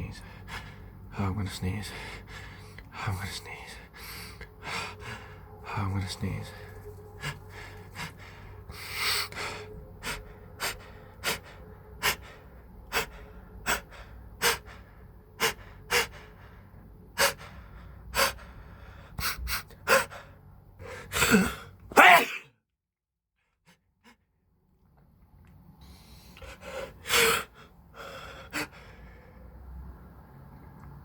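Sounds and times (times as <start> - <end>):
man gasping breaths: 1.9 - 2.9, 3.8 - 5.8, 6.6 - 21.8, 25.8 - 29.6
man sneezing: 21.0 - 22.5.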